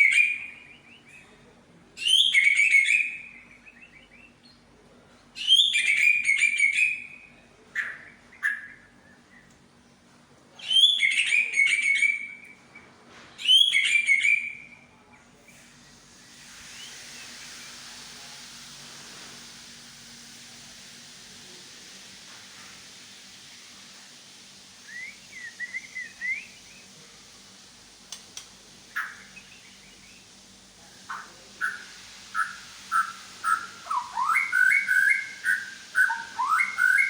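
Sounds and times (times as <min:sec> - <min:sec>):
steady hiss: 0:00.0 - 0:10.8, 0:14.7 - 0:37.0
songbird whistles and chirps: 0:02.0 - 0:04.6, 0:05.4 - 0:09.5, 0:10.6 - 0:14.9, 0:16.7 - 0:17.8, 0:24.8 - 0:26.9, 0:31.1 - 0:37.0.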